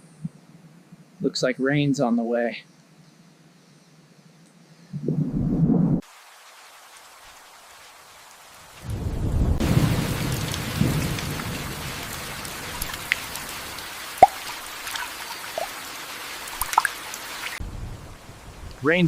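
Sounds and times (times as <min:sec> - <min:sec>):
heavy rain: 0:06.0 - 0:19.0
large raindrops plopping: 0:08.2 - 0:17.6
thunder rumbling: 0:08.8 - 0:14.4.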